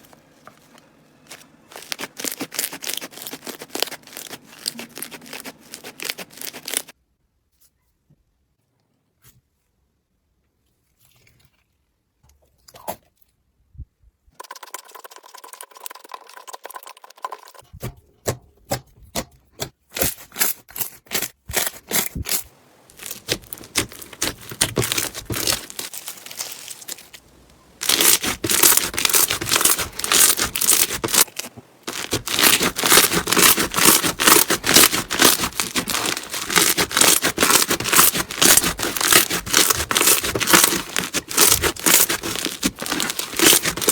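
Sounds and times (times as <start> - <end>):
crunchy slime crackling: 1.2 - 7.0, 21.1 - 43.9.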